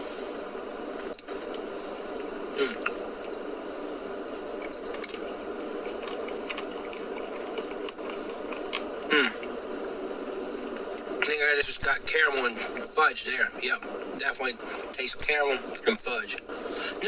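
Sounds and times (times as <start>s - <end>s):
steady buzzing hum: 0.0s - 17.0s
man murmuring mm: 2.6s - 2.9s, 9.1s - 9.5s.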